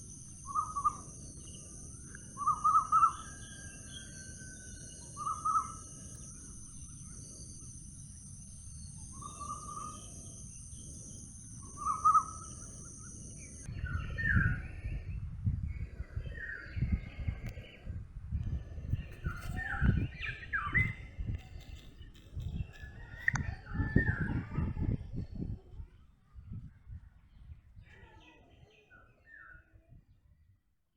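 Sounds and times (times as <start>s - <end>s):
birds calling: 2.2s - 7.6s, 9.1s - 14.4s.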